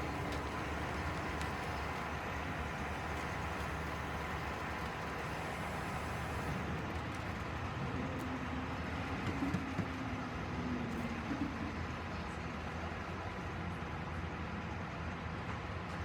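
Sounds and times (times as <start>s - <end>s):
low engine rumble: 0.0s - 6.7s.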